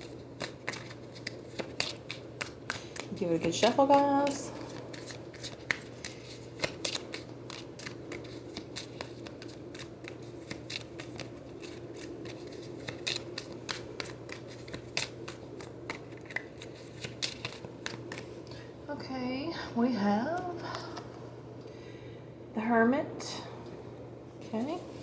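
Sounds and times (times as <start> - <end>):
cards being shuffled by hand: 0.0 - 18.7.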